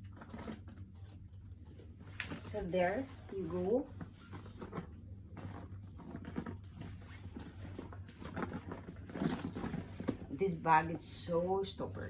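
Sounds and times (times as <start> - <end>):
faint low hum: 0.0 - 12.0
bag rustling and knocking: 3.6 - 10.4.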